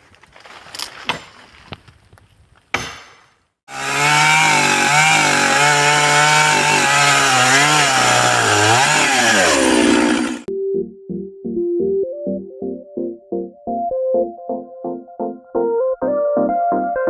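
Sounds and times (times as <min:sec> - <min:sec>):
sharp cracks and knocks: 0:00.6 - 0:03.4
chainsaw cutting wood: 0:02.7 - 0:10.5.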